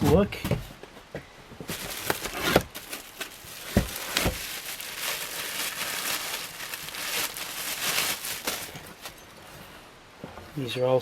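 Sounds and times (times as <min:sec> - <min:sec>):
plastic packaging crinkling: 0:01.7 - 0:09.3.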